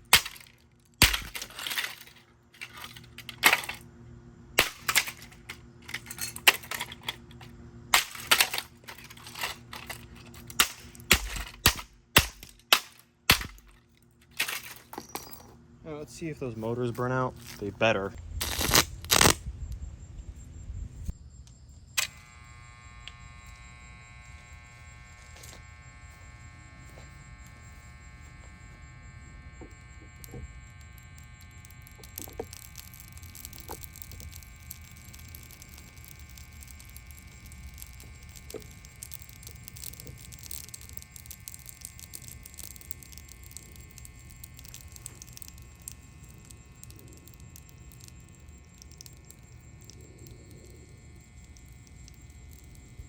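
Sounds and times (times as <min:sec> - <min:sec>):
motor crackles: 0:16.1 - 0:19.4, 0:21.9 - 0:53.0
electric motor whining: 0:22.0 - 0:47.5.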